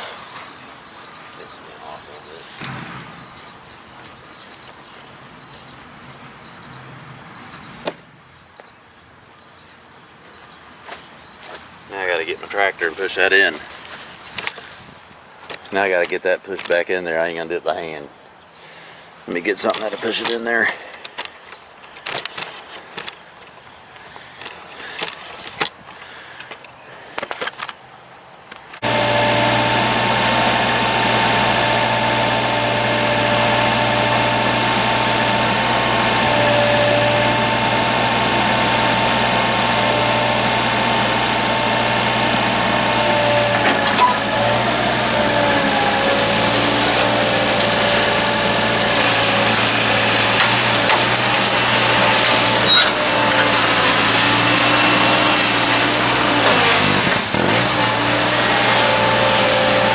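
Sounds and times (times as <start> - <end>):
tractor engine running: 28.8 - 59.9.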